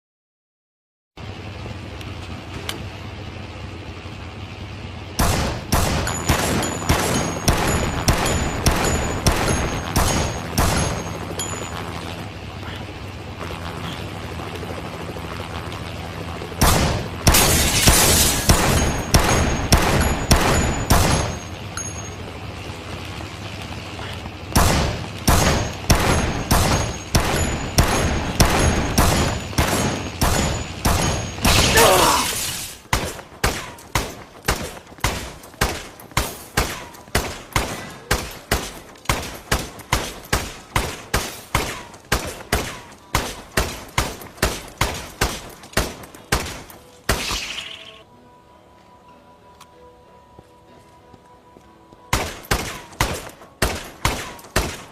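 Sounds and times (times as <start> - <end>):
pistol shots with echo: 32.9 - 47.6, 52.1 - 54.9.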